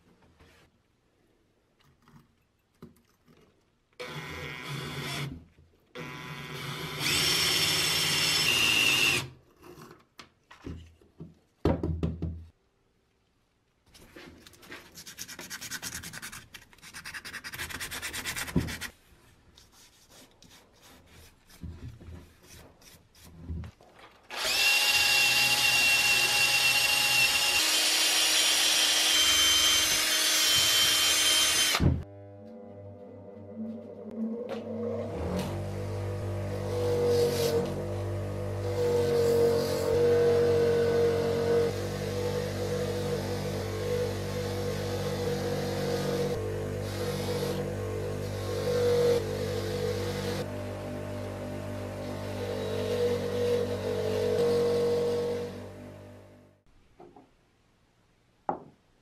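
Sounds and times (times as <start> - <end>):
rubbing and knocking on parts: 14.0 - 19.0
handheld power tool running: 24.3 - 32.0, 35.2 - 55.9.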